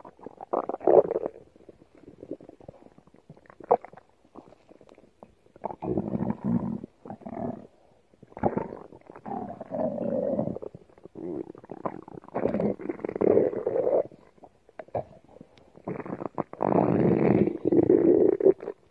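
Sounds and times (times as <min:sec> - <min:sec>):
stomach growling and gurgling: 0:00.0 - 0:18.9.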